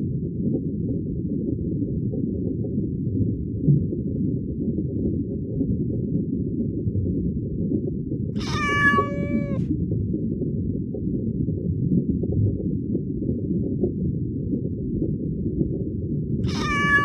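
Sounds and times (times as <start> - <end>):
cat meowing: 8.4 - 9.6, 16.4 - 17.0.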